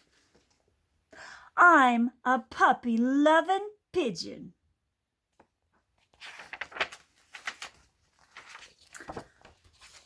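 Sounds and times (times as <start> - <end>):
book pages rustling and turning: 0.0 - 0.7, 5.3 - 10.0.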